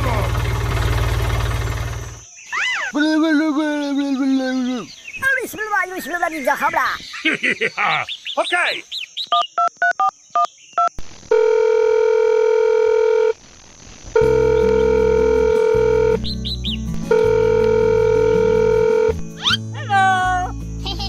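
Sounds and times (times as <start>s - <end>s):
electronic beeping: 14.2s - 16.3s
low musical notes: 14.2s - 20.8s.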